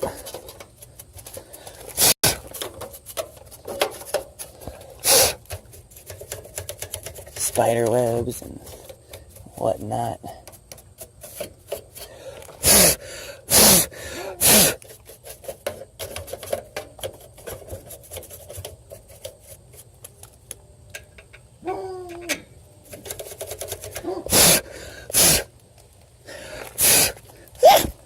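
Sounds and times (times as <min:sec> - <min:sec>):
air blowing puffs: 0:05.0 - 0:05.5, 0:12.0 - 0:14.8, 0:24.3 - 0:25.5, 0:26.3 - 0:28.0.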